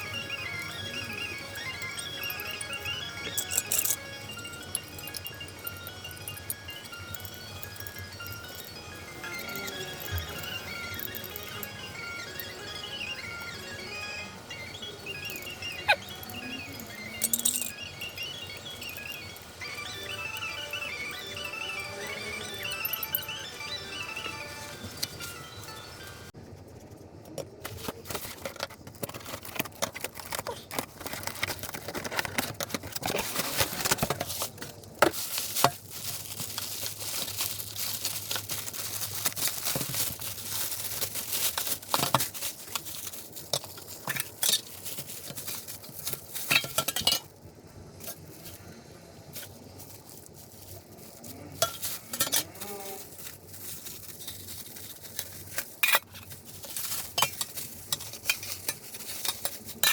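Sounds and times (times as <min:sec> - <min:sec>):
stirring and clinking in container: 0:51.6 - 0:59.9.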